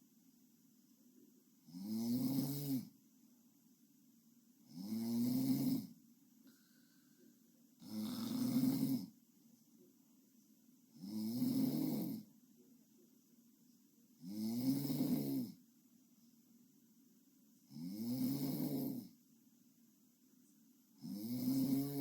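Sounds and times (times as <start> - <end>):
girl snoring: 1.7 - 2.9, 7.8 - 9.1, 11.0 - 12.2, 14.2 - 15.6, 17.7 - 19.1, 21.0 - 22.0.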